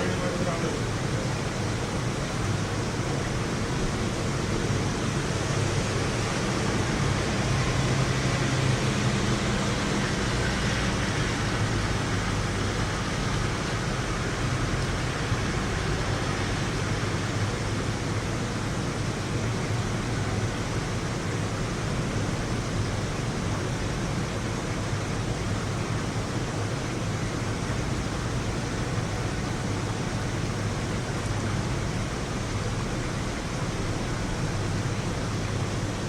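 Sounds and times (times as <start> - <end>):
steady rain hiss: 0.0 - 36.0.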